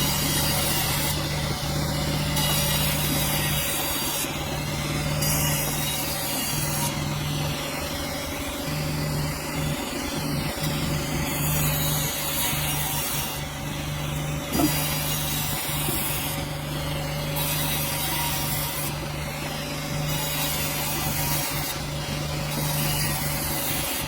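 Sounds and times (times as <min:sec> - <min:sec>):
saw cutting through log: 0:00.0 - 0:24.0.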